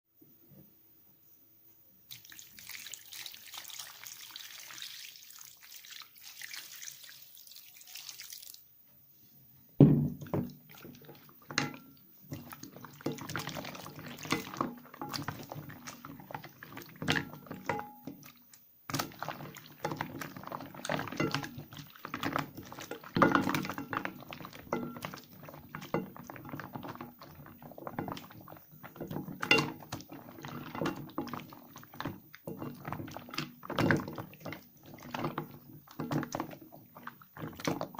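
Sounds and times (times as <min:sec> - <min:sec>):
soap squishing in water: 0:02.1 - 0:08.6, 0:10.0 - 0:37.9
water running from tap: 0:02.1 - 0:08.6.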